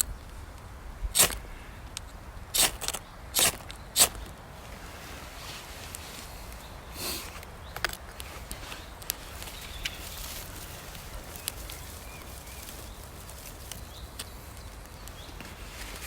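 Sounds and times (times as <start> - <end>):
steady rain hiss: 4.0 - 16.0.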